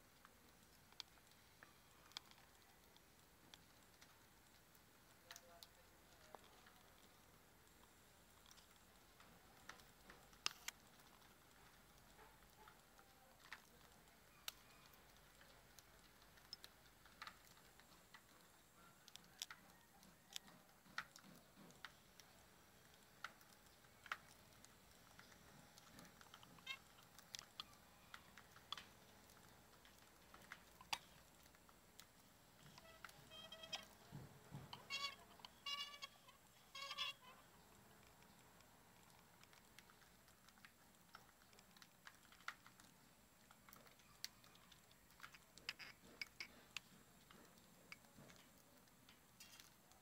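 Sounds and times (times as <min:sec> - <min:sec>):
budgies cracking seeds: 0:00.2 - 0:50.0.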